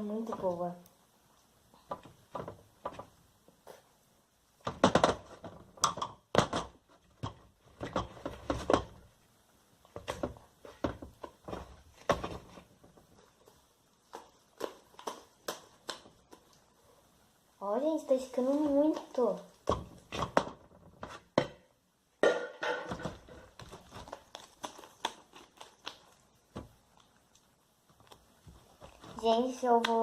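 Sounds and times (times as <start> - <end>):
slime squishing: 9.9 - 17.1, 23.4 - 30.0.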